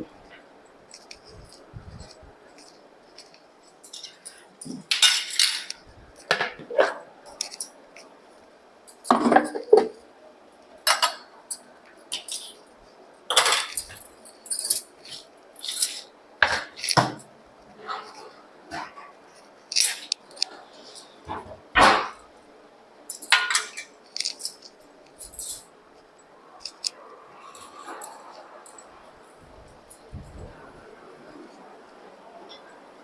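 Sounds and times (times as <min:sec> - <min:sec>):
metal cookware clattering and scraping: 0:03.8 - 0:07.7, 0:10.9 - 0:12.6, 0:13.3 - 0:17.2, 0:23.1 - 0:24.6.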